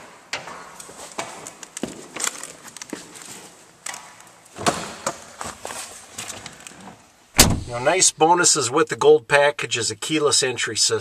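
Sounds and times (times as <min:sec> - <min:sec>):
footsteps: 0:00.0 - 0:04.1.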